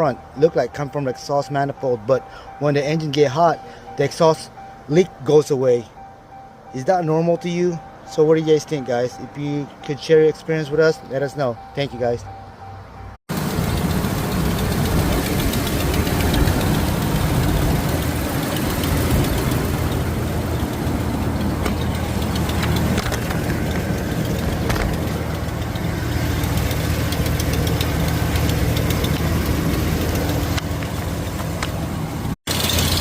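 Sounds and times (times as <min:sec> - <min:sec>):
exhaust leak ticking puff: 0:13.3 - 0:31.7
car engine idling: 0:13.3 - 0:33.0.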